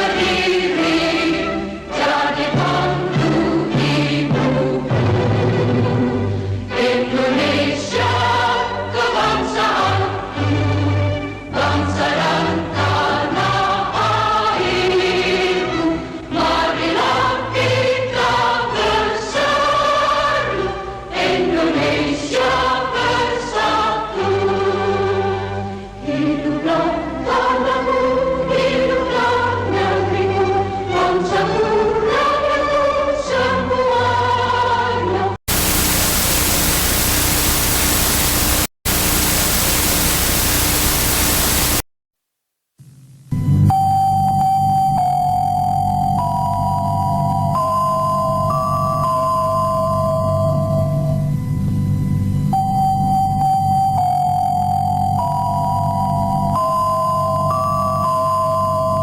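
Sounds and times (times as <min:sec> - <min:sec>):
choir singing sustained chords: 0:00.0 - 0:30.5
faint low hum: 0:35.5 - 0:41.8
loud static hiss: 0:35.5 - 0:41.9.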